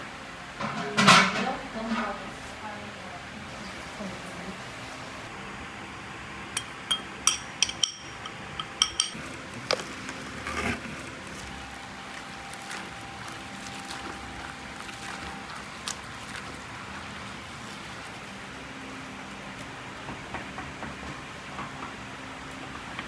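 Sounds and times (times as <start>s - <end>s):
background hum: 6.4s - 20.4s
tableware clinking: 6.6s - 9.8s.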